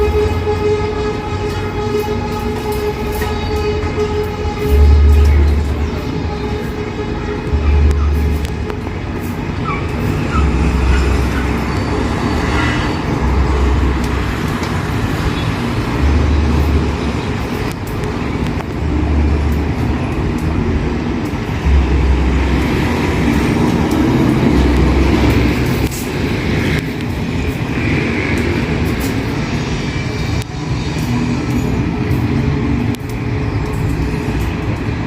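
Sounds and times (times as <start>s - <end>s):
passing cars buses and trucks: 0.0s - 35.0s
deep low throb: 4.6s - 6.0s, 13.2s - 14.4s, 15.9s - 17.2s, 18.8s - 25.8s.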